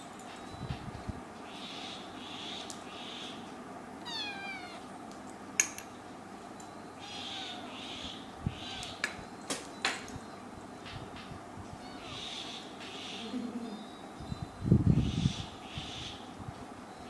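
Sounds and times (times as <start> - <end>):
kitten meowing: 4.0 - 4.8.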